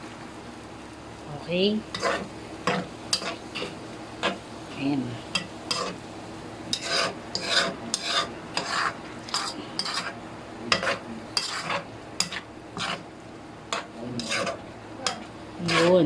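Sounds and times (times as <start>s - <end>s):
utensil scraping frying pan: 1.8s - 4.5s, 5.3s - 6.0s, 6.6s - 16.0s.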